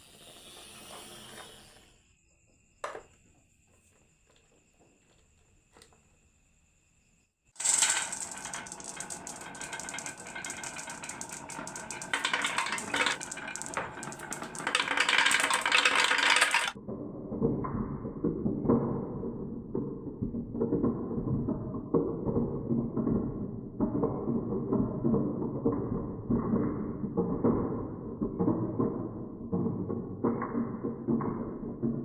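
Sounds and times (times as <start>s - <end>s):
marbles clattering down marble run: 7.6s - 32.0s.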